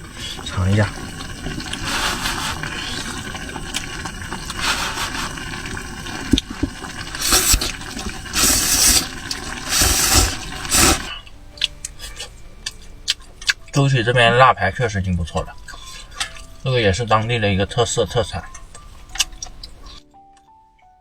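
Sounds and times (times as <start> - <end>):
person slurping noodles: 0.0 - 11.2.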